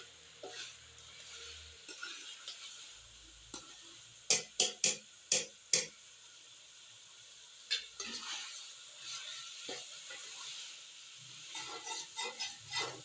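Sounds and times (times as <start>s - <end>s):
food sizzling in oil: 0.0s - 13.0s
spoon scraping a pot: 0.4s - 2.8s, 7.7s - 10.5s, 11.5s - 13.0s.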